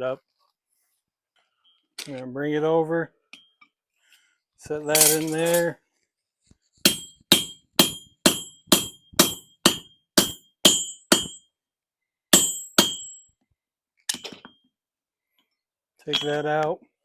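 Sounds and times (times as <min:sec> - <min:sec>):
hammer striking steel punch: 0:06.9 - 0:11.5, 0:12.4 - 0:13.2.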